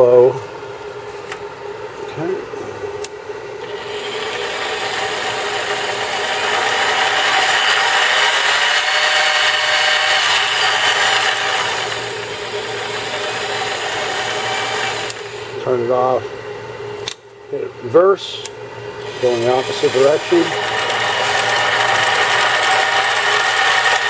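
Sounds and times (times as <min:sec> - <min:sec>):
bench lathe running: 0:03.6 - 0:15.7, 0:19.0 - 0:24.0.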